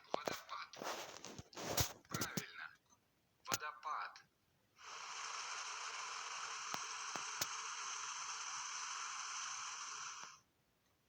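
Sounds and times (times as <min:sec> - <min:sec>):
sharp clicks: 0:06.6 - 0:07.6.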